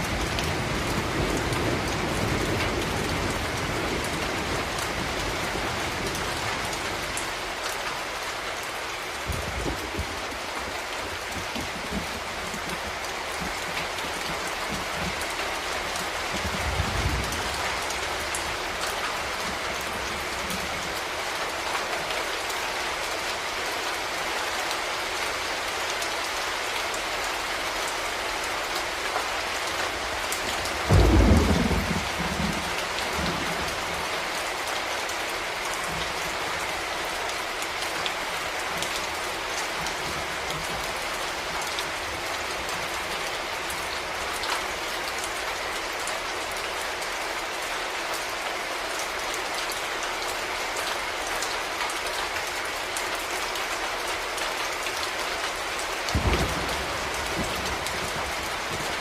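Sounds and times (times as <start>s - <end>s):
steady rain: 0.0s - 59.0s
thunder rumbling: 30.8s - 34.0s, 56.1s - 59.0s.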